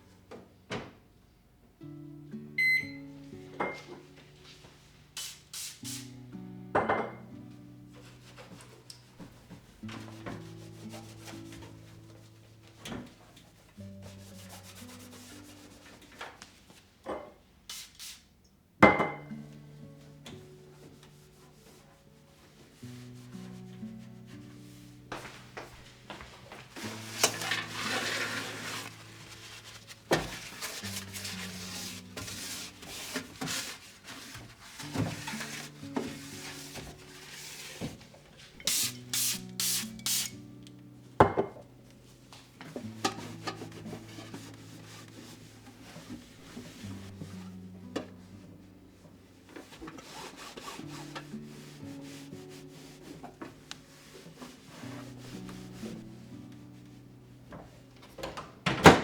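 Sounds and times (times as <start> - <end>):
soft instrumental background music: 0.0 - 17.1, 18.7 - 59.0
rubbing or scraping: 9.9 - 12.2, 13.9 - 16.2, 20.8 - 40.4, 42.8 - 47.5, 49.5 - 56.1
scrubbing strokes on a surface: 10.0 - 12.3, 13.5 - 16.1, 20.7 - 40.4, 42.8 - 47.5, 49.5 - 56.2.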